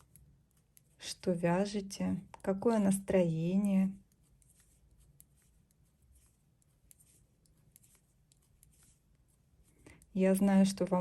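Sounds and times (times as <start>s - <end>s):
low room hum: 0.0s - 11.0s
knitting needles clicking: 2.2s - 9.0s.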